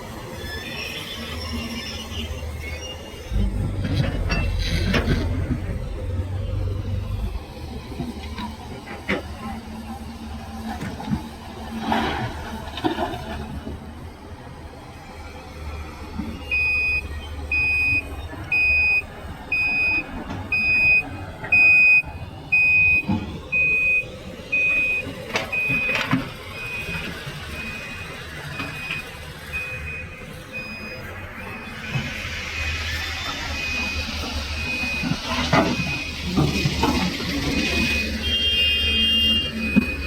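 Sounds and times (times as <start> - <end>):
vehicle reversing alarm beeping: 0.7 - 7.7, 16.3 - 40.0
low engine rumble: 3.2 - 10.7.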